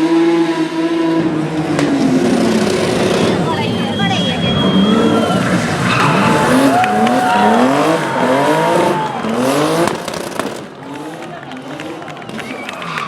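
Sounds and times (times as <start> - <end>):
car engine revving through upshifts: 0.0 - 13.0
tyre squeal: 3.1 - 8.9.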